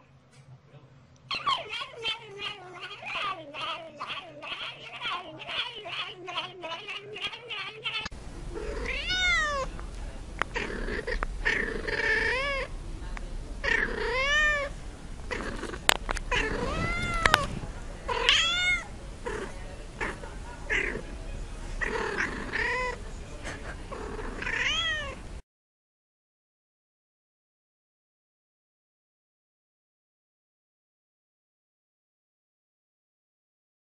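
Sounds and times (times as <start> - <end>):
cat meowing: 1.3 - 9.7, 10.6 - 12.7, 13.6 - 14.7, 15.5 - 17.5, 18.1 - 21.0, 21.8 - 23.0, 24.0 - 25.2.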